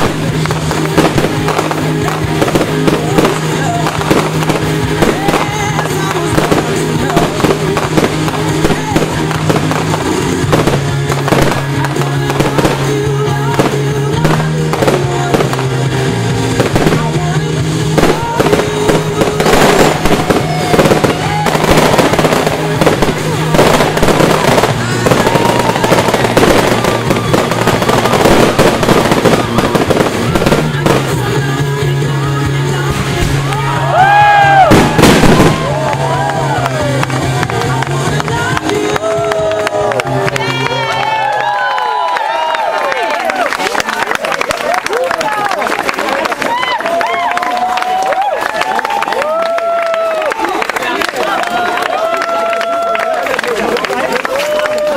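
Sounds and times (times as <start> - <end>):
music with sustained notes: 0.0 - 43.7
fireworks bangs and crackling: 0.0 - 54.9.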